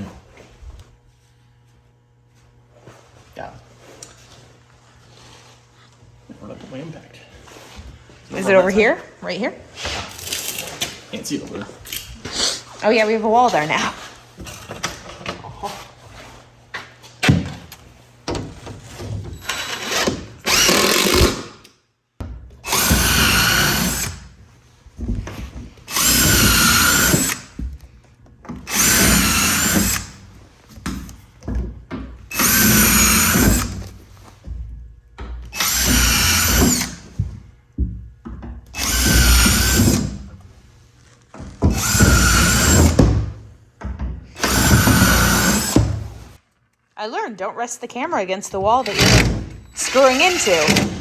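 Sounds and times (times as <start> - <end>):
impact driver through wall: 19.4 - 21.7, 22.6 - 24.3, 25.9 - 27.6, 28.6 - 30.2, 32.3 - 33.9, 35.5 - 37.1, 38.7 - 40.3, 41.6 - 43.4, 44.3 - 46.3, 48.8 - 51.0.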